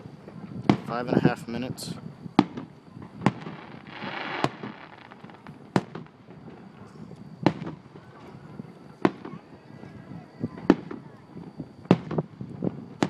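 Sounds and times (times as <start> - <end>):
hissing crackle: 1.8 - 8.3
firework shells bursting: 2.4 - 6.6.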